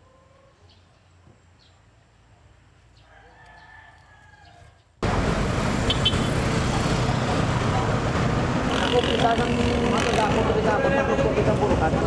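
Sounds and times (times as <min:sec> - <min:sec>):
rooster crowing faintly: 0:03.0 - 0:04.8
loud steady rushing noise: 0:05.0 - 0:12.0.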